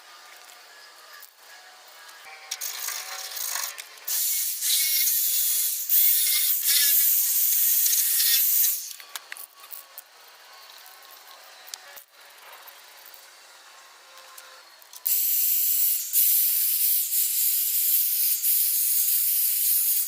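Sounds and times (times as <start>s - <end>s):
spray paint can hissing: 2.6s - 9.8s, 15.0s - 20.0s.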